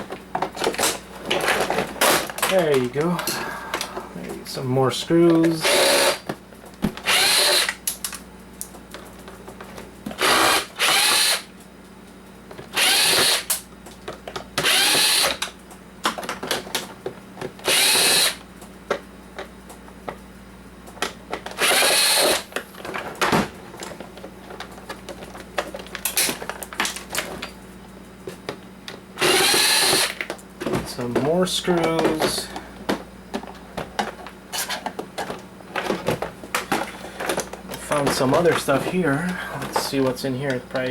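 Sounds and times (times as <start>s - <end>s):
power driver motor whine: 5.2s - 6.3s, 6.9s - 8.0s, 10.1s - 11.5s, 12.7s - 13.6s, 14.6s - 15.5s, 17.6s - 18.4s, 21.5s - 22.6s, 29.2s - 30.3s.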